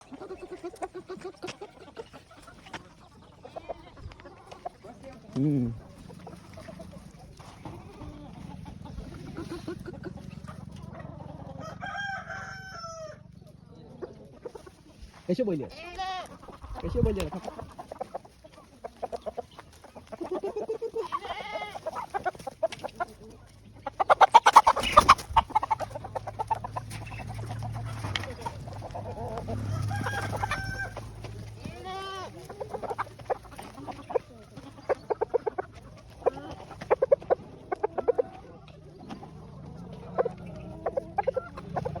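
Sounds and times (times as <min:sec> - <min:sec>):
chickens clucking: 0:00.0 - 0:42.0
rooster crow: 0:11.4 - 0:13.3, 0:29.1 - 0:31.3.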